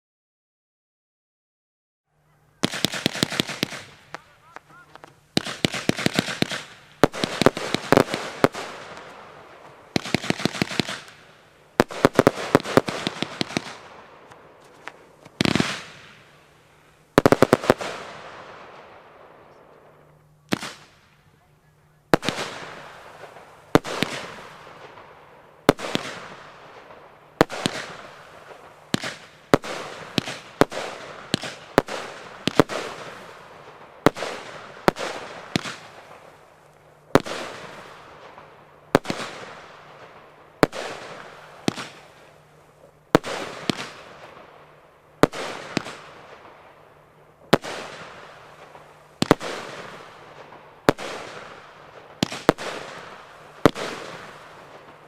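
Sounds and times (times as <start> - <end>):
firework cake bangs: 40.6 - 42.2, 43.2 - 44.4.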